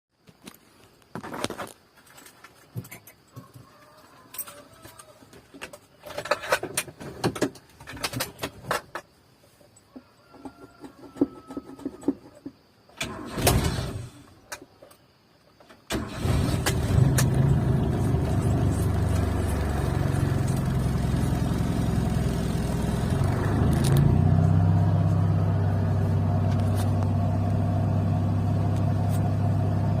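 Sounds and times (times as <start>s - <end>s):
car engine starting and idling: 13.0s - 14.3s, 15.9s - 30.0s.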